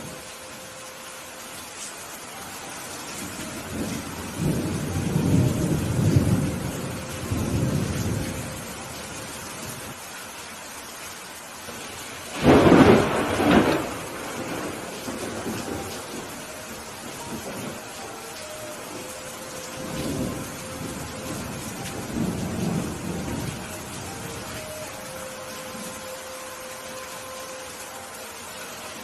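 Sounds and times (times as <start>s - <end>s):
steady rain: 0.0s - 29.0s
low rolling thunder: 3.2s - 10.0s, 11.8s - 24.6s.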